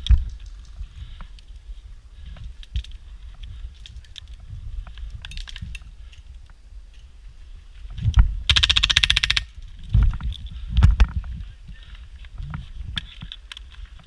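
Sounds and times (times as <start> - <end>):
airsoft gun automatic burst: 8.5 - 9.5.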